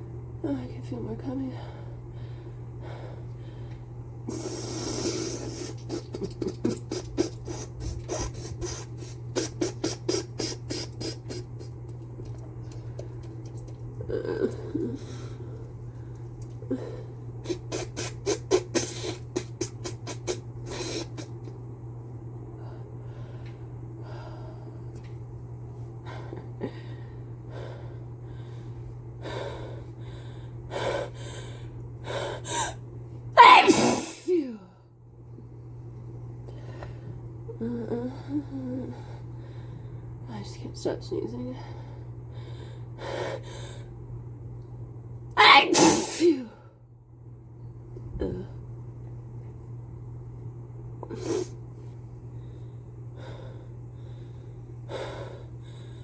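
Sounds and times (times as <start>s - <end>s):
quick sharp sniffing: 4.3s - 11.7s.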